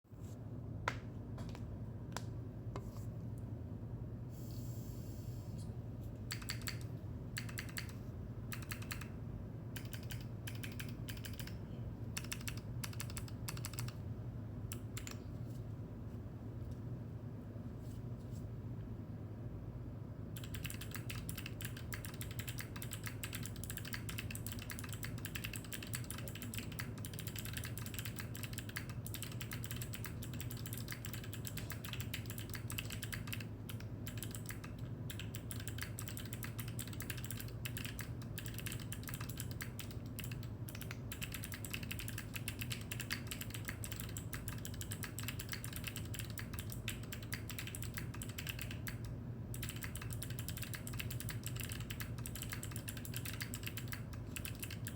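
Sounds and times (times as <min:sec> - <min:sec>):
fast typing on mechanical keyboard: 0:06.3 - 0:06.8, 0:07.4 - 0:09.1, 0:09.8 - 0:11.6, 0:12.2 - 0:14.0, 0:14.7 - 0:15.2, 0:20.4 - 0:54.9.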